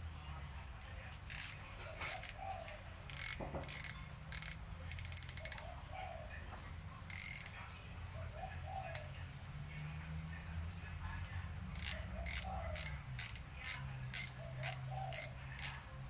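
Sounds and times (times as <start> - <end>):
fishing reel ratcheting clicks: 1.1 - 5.7, 7.1 - 7.6, 11.8 - 15.9.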